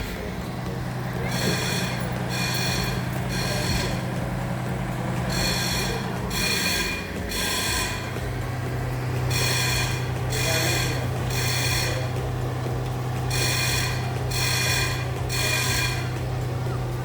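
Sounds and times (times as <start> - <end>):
fire truck engine idling: 0.0 - 17.0
fire alarm pulsing: 1.0 - 4.5, 5.1 - 8.4, 9.2 - 12.5, 13.3 - 16.2.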